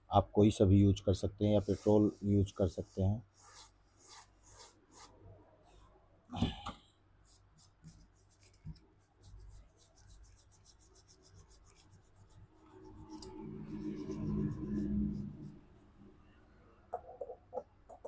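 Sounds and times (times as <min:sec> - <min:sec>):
small brush scratching circuit board: 0:01.4 - 0:05.2, 0:07.2 - 0:15.9.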